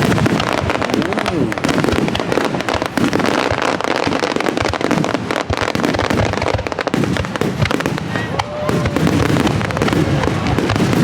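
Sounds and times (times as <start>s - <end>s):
fireworks crackling overhead: 0.0s - 11.0s.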